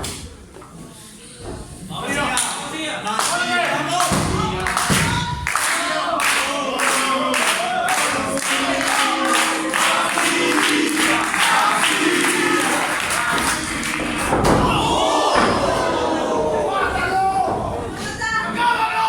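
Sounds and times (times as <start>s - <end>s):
rhythmic clapping: 2.3s - 16.4s
crowd chanting: 3.8s - 19.0s
heavy thud: 13.3s - 18.1s.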